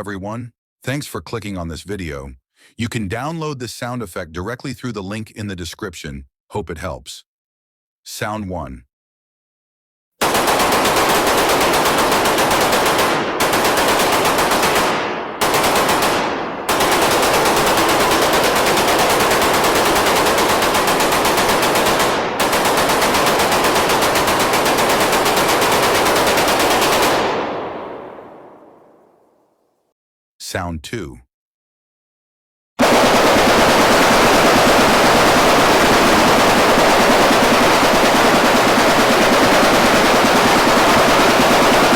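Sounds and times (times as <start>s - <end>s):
automatic gunfire indoors: 10.2s - 29.0s, 32.8s - 41.9s.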